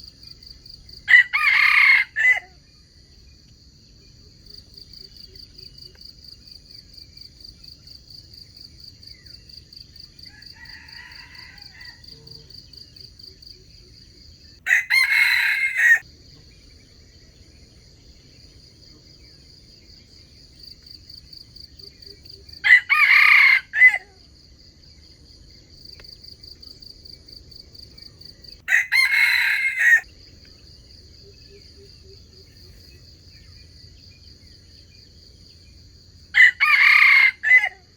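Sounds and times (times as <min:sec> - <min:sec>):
insects chirring: 0:00.0 - 0:37.9
rooster crowing: 0:01.1 - 0:02.6, 0:10.2 - 0:12.4, 0:14.6 - 0:16.0, 0:22.6 - 0:24.2, 0:28.6 - 0:30.1, 0:36.3 - 0:37.9.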